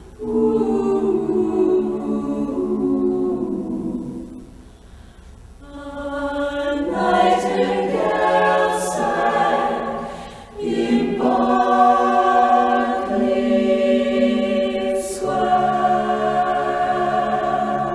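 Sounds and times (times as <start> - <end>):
a cappella group singing harmony: 0.0 - 17.9.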